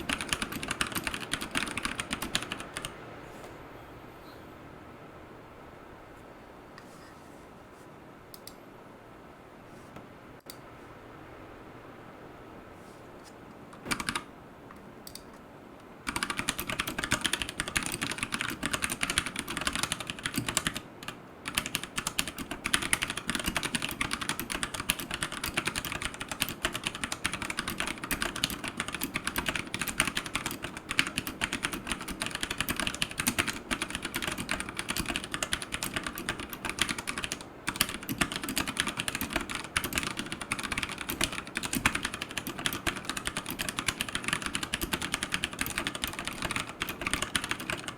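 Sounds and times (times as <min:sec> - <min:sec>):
fast mechanical keyboard typing: 0:00.0 - 0:02.9, 0:13.9 - 0:14.3, 0:16.0 - 0:47.9.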